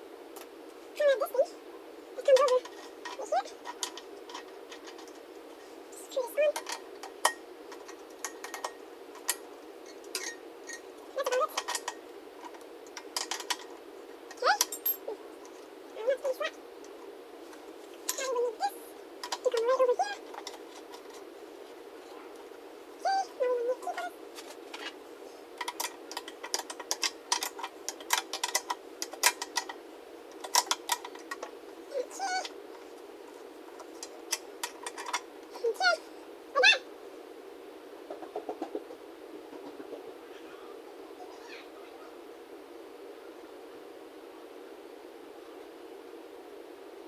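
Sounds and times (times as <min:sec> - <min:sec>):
steady low hum: 0:00.0 - 0:47.0
hand tools clicking and clinking: 0:02.3 - 0:05.3, 0:06.5 - 0:15.6, 0:19.2 - 0:21.3, 0:25.6 - 0:32.9, 0:33.8 - 0:35.3.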